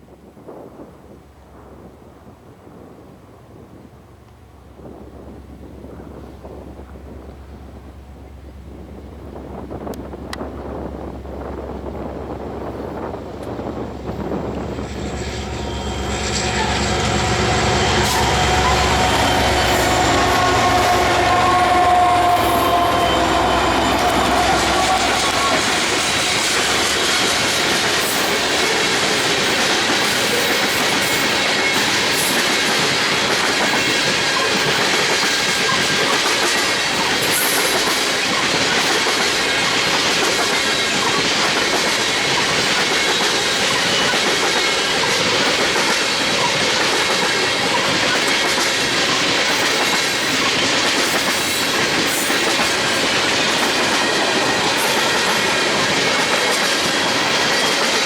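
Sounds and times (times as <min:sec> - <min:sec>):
train wheels rushing on rail: 0:00.4 - 0:58.0
clickety-clack over rail joints: 0:09.2 - 0:58.0.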